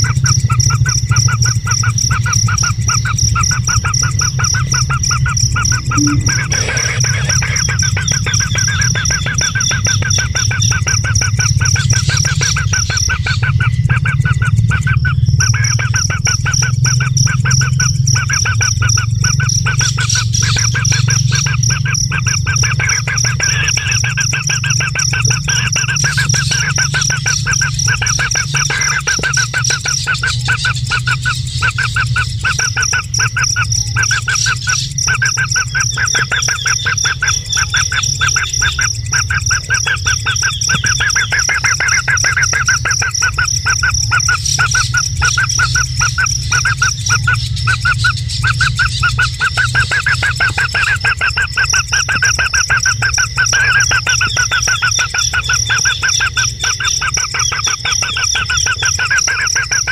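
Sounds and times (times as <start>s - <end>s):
high continuous whine: 0.0s - 59.9s
low steady hum: 0.0s - 59.9s
bird calling repeated notes: 3.9s - 59.9s.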